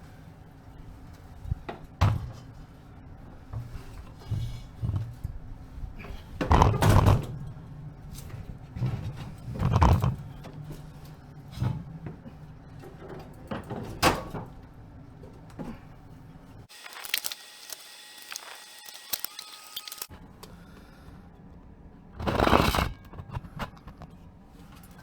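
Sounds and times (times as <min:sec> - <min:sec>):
knocks and scrapes: 0:22.2 - 0:24.8.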